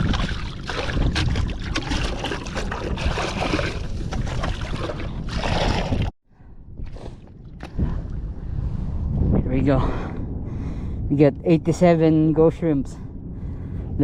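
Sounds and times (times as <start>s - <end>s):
mud and water sloshing: 0.0s - 6.2s
wind buffeting microphone: 0.0s - 14.0s.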